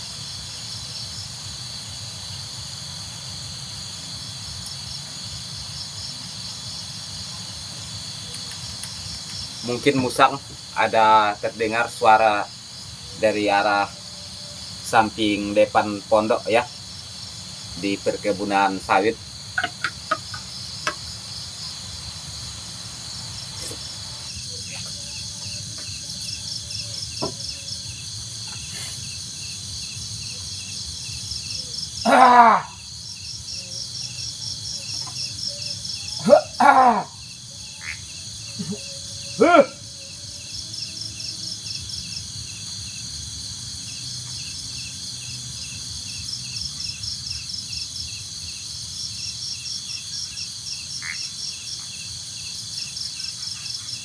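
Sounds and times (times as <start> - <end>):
crickets and insects chirring: 0.0 - 54.0
loud short pitched calls: 36.2 - 37.1.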